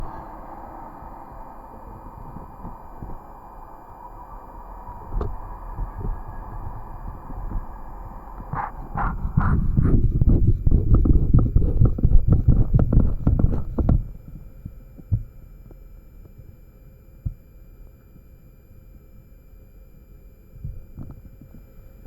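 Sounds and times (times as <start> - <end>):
low knocking and rumbling: 0.0 - 14.2.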